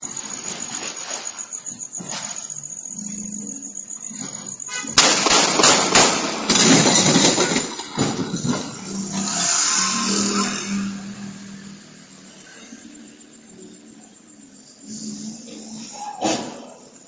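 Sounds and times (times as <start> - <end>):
loud continuous noise: 0.0 - 17.0
gunshots: 4.8 - 8.6.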